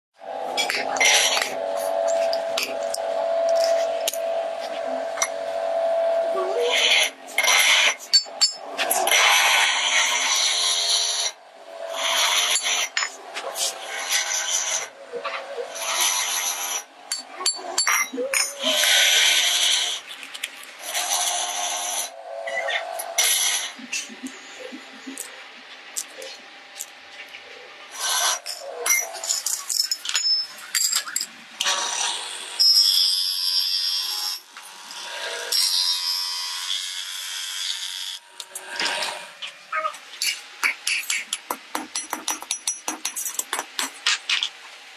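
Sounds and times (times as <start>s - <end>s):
bearing grinding: 0.3s - 25.3s.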